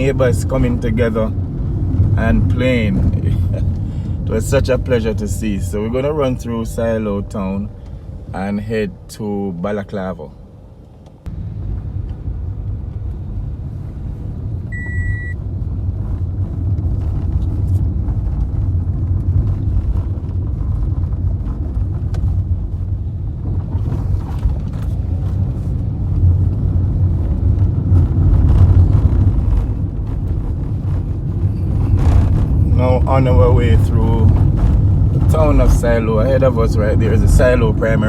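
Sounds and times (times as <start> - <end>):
car engine and tyre rumble: 0.0 - 38.0
short electronic beep: 14.7 - 15.4.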